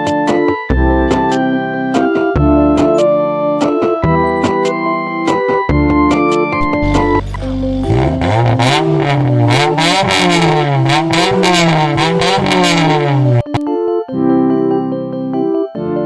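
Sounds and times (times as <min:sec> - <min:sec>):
keyboard music: 0:00.0 - 0:16.0
engine revving: 0:06.8 - 0:13.6.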